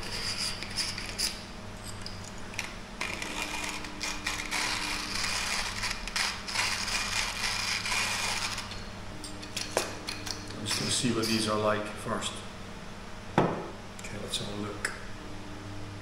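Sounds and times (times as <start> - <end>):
hand coffee grinder crushing beans: 2.6 - 8.8.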